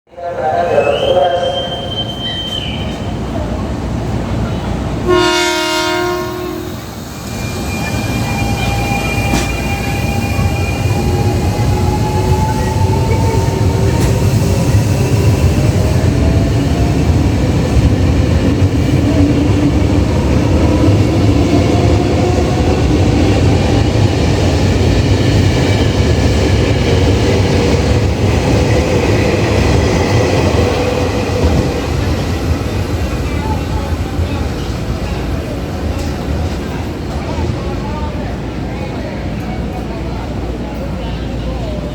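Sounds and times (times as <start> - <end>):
train wheels rumbling on rails: 2.0 - 41.9
train horn blast: 5.0 - 6.8.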